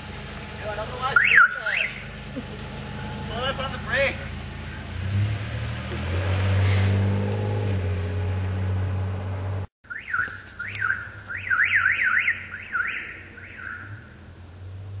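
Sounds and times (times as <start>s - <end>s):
car alarm siren whooping: 1.0s - 2.1s, 9.9s - 14.2s.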